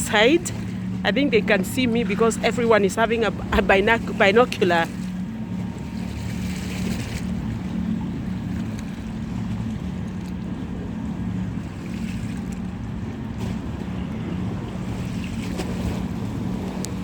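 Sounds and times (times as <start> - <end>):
boat engine droning: 0.0 - 17.0
water and wind noise: 0.0 - 17.0.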